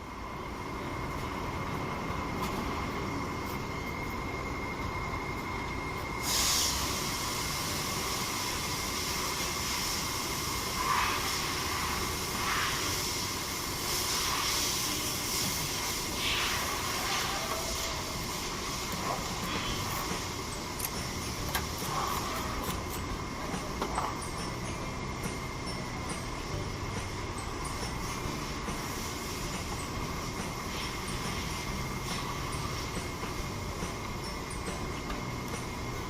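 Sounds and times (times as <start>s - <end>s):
hiss: 6.2s - 22.6s, 28.0s - 33.8s.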